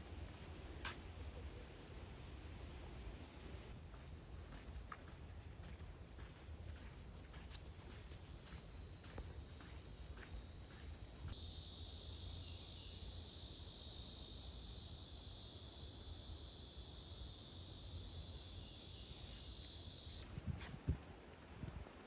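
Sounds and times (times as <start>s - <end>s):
high-pitched insect drone: 7.9s - 20.2s.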